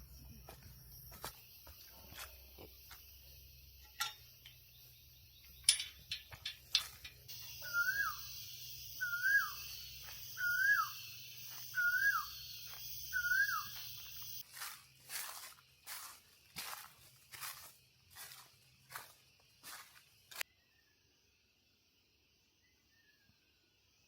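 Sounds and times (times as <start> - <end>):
cicadas buzzing: 0.0 - 20.4
bird calling rising falling note: 7.5 - 11.0.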